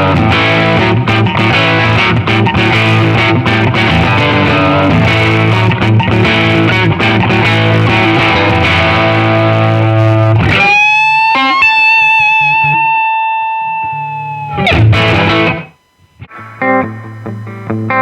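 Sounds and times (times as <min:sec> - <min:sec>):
electric guitar riff: 0:00.0 - 0:18.0.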